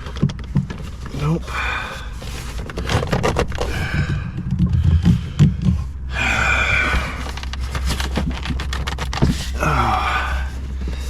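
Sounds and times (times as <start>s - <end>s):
strained breath: 1.3s - 2.7s, 3.6s - 7.8s
plastic trim creaking and clicking: 2.0s - 6.0s, 6.9s - 9.6s.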